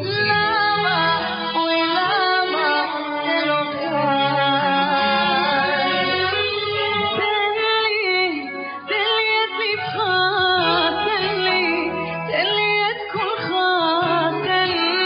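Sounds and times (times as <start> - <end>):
instrumental backing: 0.0 - 15.0.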